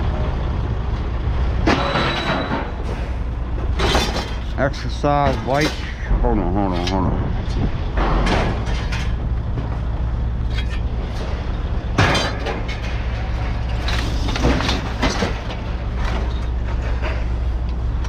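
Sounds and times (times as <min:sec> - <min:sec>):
low engine hum: 0:00.0 - 0:01.7, 0:02.6 - 0:18.0
scrap metal clanking onto pile: 0:03.8 - 0:06.1, 0:08.0 - 0:09.2, 0:12.0 - 0:17.4.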